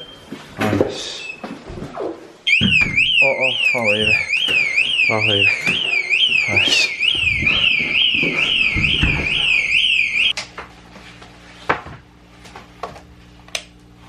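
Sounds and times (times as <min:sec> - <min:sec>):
electronic alarm warbling: 0:01.2 - 0:10.3.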